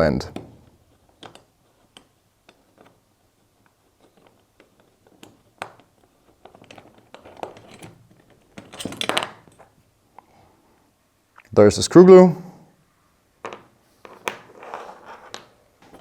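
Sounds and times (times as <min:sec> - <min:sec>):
allen key clicking on screw: 0:00.4 - 0:03.0.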